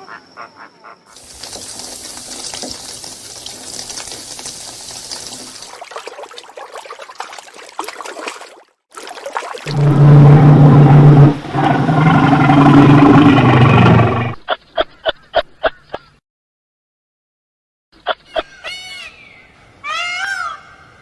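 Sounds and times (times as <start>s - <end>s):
running water: 1.1s - 14.4s.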